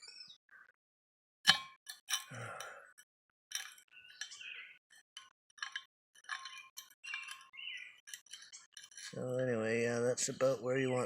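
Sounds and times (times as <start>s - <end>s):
metal parts clinking and scraping: 1.5s - 2.4s, 3.5s - 9.3s.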